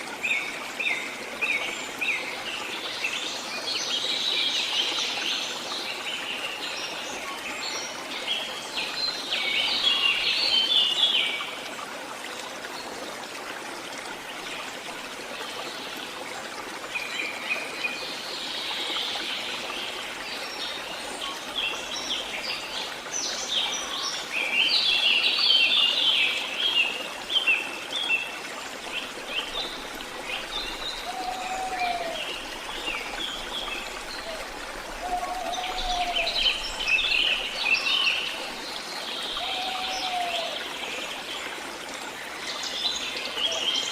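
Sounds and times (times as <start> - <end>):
songbirds chirping and singing: 29.3 - 38.6
low arching bird call: 30.9 - 32.8, 34.2 - 38.1, 39.3 - 40.7.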